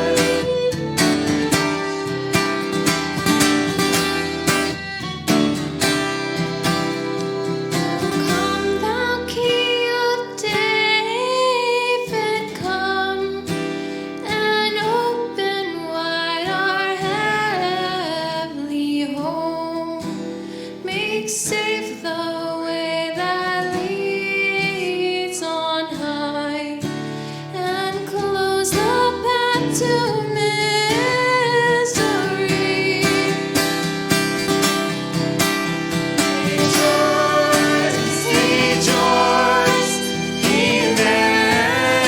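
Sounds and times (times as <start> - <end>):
woman singing: 0.0 - 2.1, 7.8 - 34.0, 36.2 - 42.0
strummed acoustic guitar: 0.0 - 42.0.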